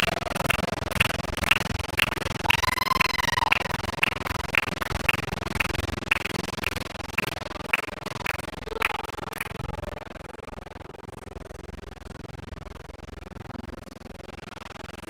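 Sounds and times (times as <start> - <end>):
sharp rhythmic clicks: 0.0 - 10.2.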